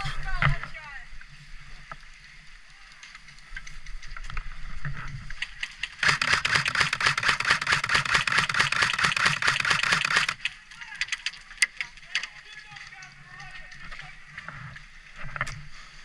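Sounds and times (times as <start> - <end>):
airsoft gunfire: 5.7 - 10.5.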